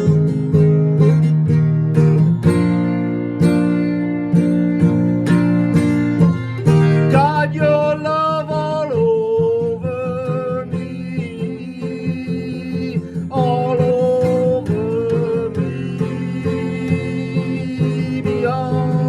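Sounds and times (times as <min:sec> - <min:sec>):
acoustic guitar strumming: 0:00.0 - 0:19.0
person singing: 0:06.7 - 0:19.0.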